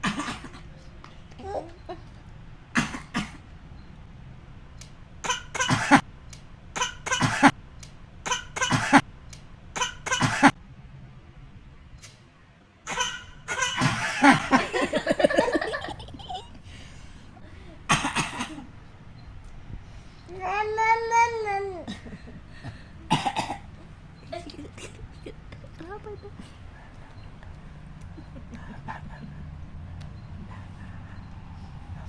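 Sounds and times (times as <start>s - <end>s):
boy fake-coughing: 5.2s - 6.0s, 6.8s - 7.6s, 8.3s - 9.0s, 9.8s - 10.6s, 12.9s - 14.3s, 23.1s - 23.6s
boy laughing: 13.5s - 16.6s, 24.2s - 25.8s.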